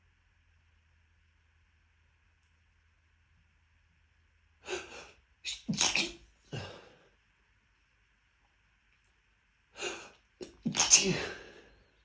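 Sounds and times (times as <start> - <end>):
person sneezing: 4.7 - 6.9, 9.8 - 11.6.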